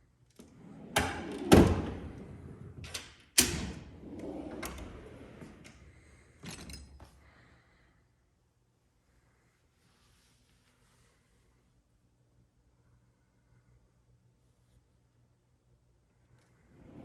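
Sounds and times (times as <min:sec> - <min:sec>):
metal drawers sliding: 0:00.5 - 0:05.8
metal drawers banging shut: 0:00.8 - 0:05.2.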